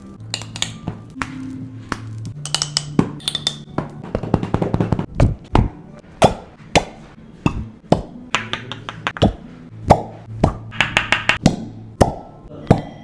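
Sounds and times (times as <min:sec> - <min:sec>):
sharp taps and knocks: 0:07.5 - 0:09.4, 0:10.4 - 0:11.5.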